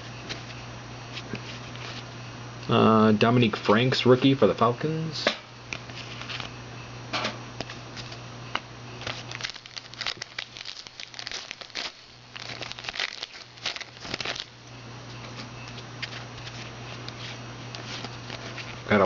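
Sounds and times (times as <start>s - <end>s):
plastic wrapper crinkling and tearing: 9.0s - 14.6s.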